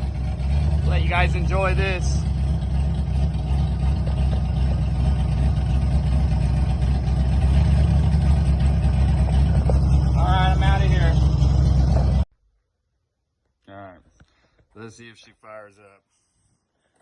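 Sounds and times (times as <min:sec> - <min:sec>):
car engine idling: 0:00.0 - 0:12.3.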